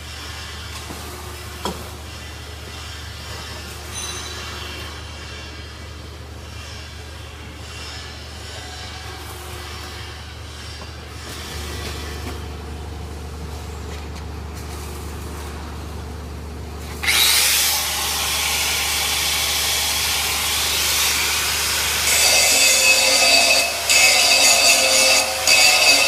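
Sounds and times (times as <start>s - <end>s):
welding arc crackling hiss: 17.2s - 26.0s.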